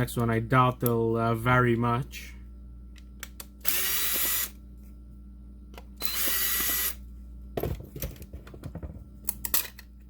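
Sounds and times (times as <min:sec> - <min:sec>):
power screwdriver whirring: 0:03.6 - 0:04.6, 0:06.0 - 0:07.0.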